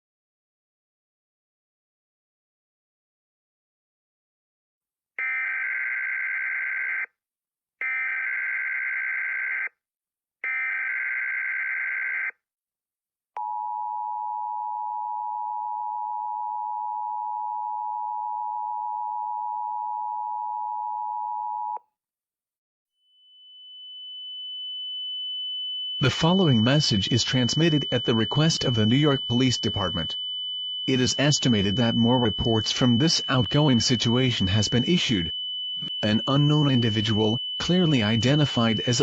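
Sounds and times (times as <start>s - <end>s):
high steady tone: 23.2s - 39.0s.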